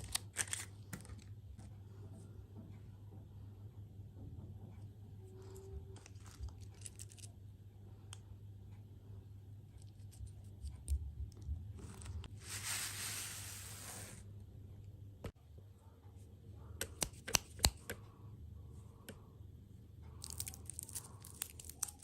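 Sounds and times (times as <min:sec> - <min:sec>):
rustling crinkle: 0:20.2 - 0:22.0.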